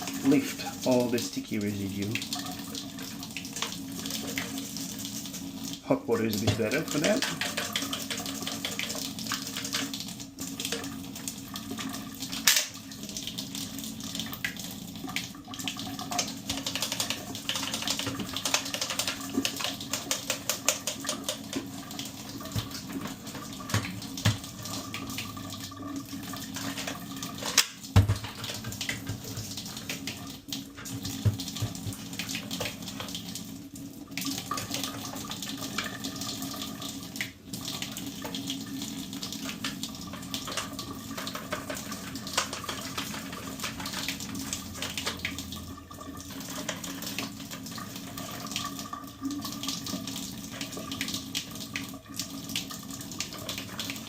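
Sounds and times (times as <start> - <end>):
tap water running into sink: 0.0 - 54.0
brush scrubbing filter mesh: 40.0 - 45.2.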